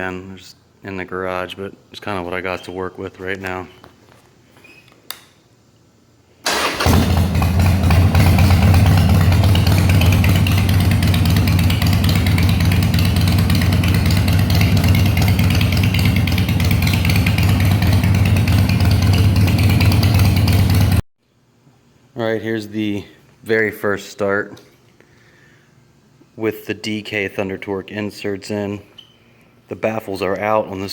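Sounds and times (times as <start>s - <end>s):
motorcycle engine starting and idling: 6.4s - 21.0s.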